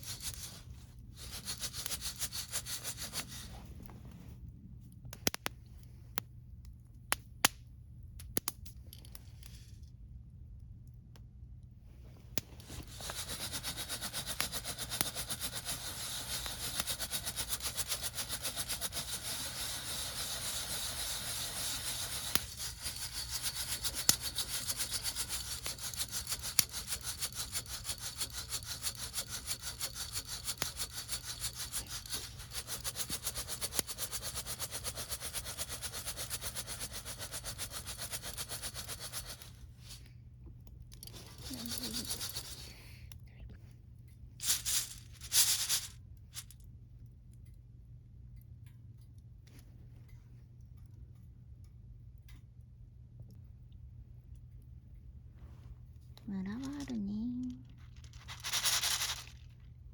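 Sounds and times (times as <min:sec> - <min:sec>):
hand coffee mill grinding: 0:00.0 - 0:00.6, 0:01.2 - 0:03.4, 0:12.6 - 0:39.5, 0:41.0 - 0:42.6, 0:44.4 - 0:45.9, 0:57.7 - 0:59.6.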